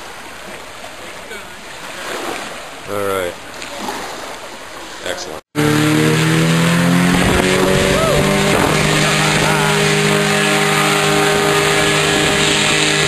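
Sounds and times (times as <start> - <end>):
boat engine running: 5.3 - 13.0.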